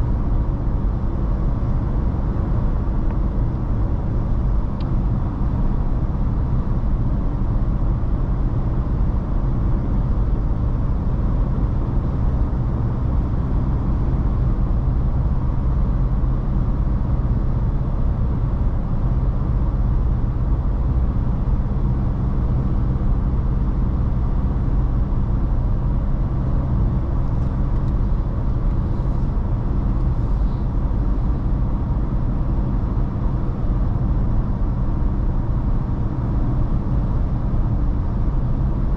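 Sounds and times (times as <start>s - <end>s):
low engine drone: 0.0s - 38.9s
road and tyre rumble: 0.0s - 38.9s.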